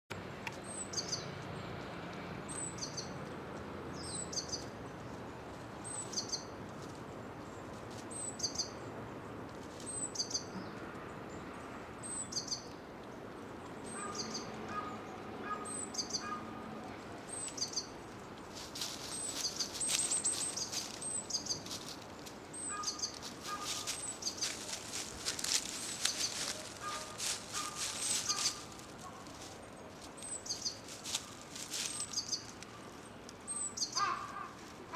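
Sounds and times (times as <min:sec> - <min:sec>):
dry leaves crunching underfoot: 0:17.5 - 0:34.9.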